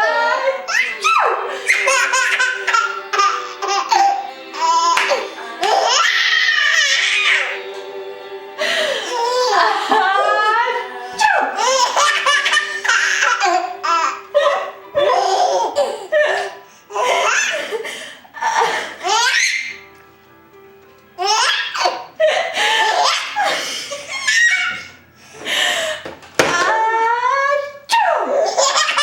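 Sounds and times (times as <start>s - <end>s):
baby laughing: 0.2s - 7.6s, 9.0s - 10.4s, 11.6s - 17.8s, 18.4s - 19.7s, 21.2s - 25.0s, 28.3s - 29.0s.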